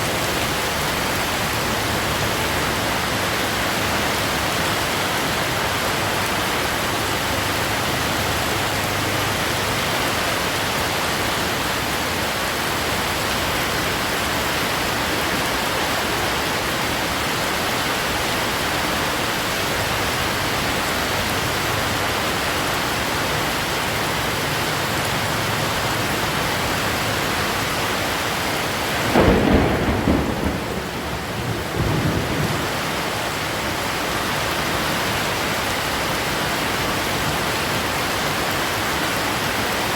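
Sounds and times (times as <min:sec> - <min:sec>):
heavy rain splashing: 0:00.0 - 0:39.9
thunder rumbling: 0:28.8 - 0:33.5.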